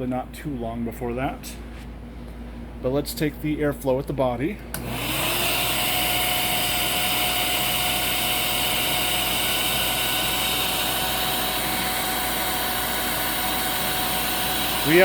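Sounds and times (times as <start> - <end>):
vacuum cleaner motor whining: 4.8 - 15.0.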